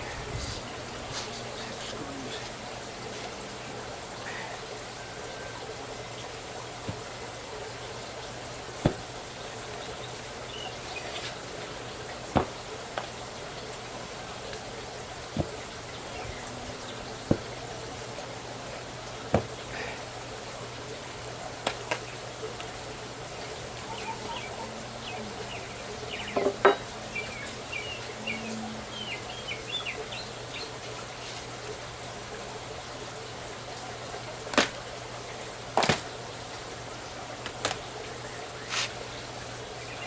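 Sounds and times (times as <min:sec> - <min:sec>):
knocks on wooden boards: 0:08.8 - 0:09.1, 0:12.3 - 0:12.6, 0:15.4 - 0:15.6, 0:17.3 - 0:17.5, 0:19.3 - 0:19.6, 0:26.4 - 0:26.8.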